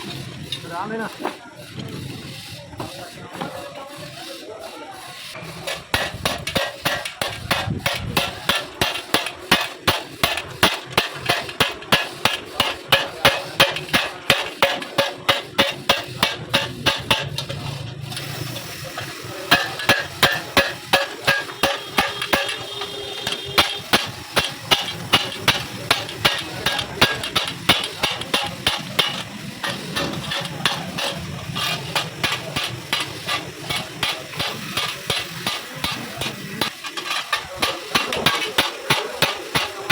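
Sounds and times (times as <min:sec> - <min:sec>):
metal being hammered: 0:00.0 - 0:39.9.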